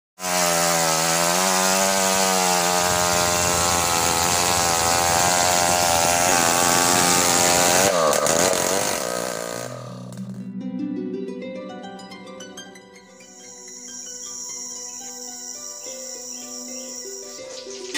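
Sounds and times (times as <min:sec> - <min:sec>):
chainsaw engine running: 0:00.2 - 0:10.4
plucked string music: 0:09.2 - 0:17.9.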